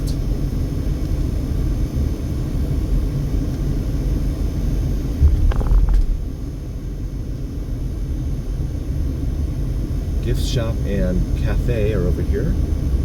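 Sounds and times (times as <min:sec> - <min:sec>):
car bump: 0:05.2 - 0:06.2.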